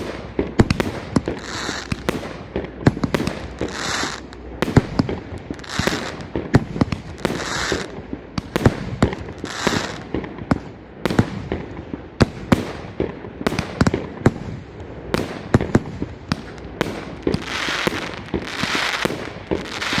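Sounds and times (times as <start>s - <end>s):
firework shots and bursts: 0.0s - 20.0s
firework hissing: 1.3s - 2.1s, 3.2s - 4.4s, 5.5s - 6.3s, 7.1s - 7.9s, 9.2s - 10.0s, 17.0s - 20.0s.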